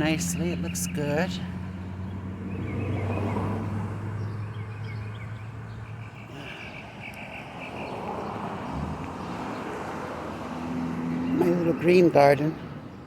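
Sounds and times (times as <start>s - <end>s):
low engine hum: 0.0s - 6.7s.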